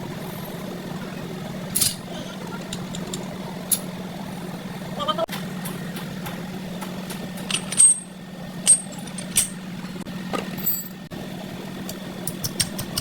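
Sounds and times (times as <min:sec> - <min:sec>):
steady low hum: 0:00.0 - 0:13.0
metal tools clinking: 0:01.7 - 0:03.9, 0:07.1 - 0:09.8, 0:10.4 - 0:11.0.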